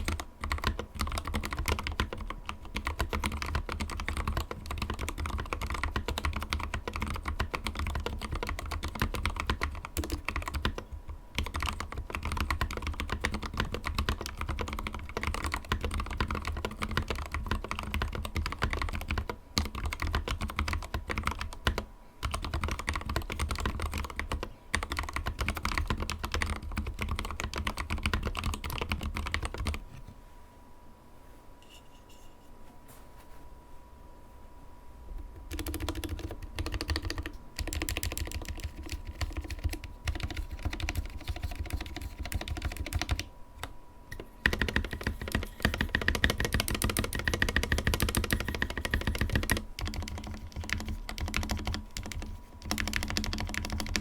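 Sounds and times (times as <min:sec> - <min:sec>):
fast mechanical keyboard typing: 0:00.0 - 0:29.8, 0:35.3 - 0:54.0.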